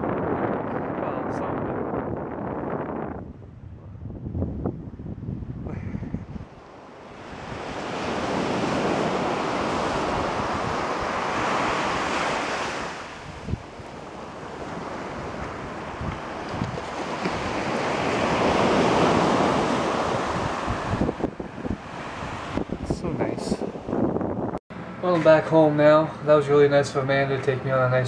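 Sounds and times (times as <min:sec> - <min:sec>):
wind buffeting microphone: 0:00.0 - 0:24.6
waves breaking on beach: 0:06.5 - 0:22.9.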